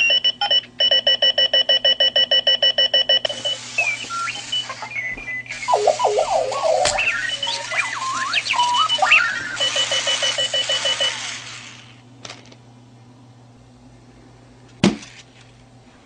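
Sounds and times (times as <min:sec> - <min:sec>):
alarm clock robotic beeps: 0:00.0 - 0:11.4.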